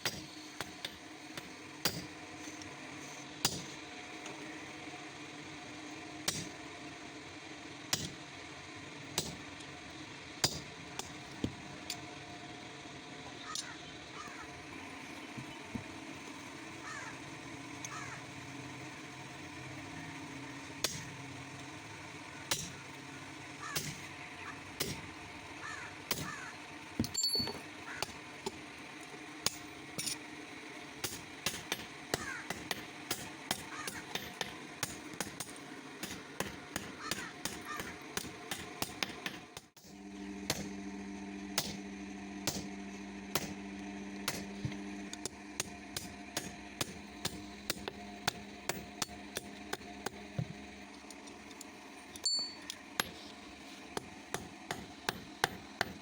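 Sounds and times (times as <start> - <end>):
hammer striking metal: 27.0 - 28.6, 52.2 - 53.3, 54.0 - 56.0.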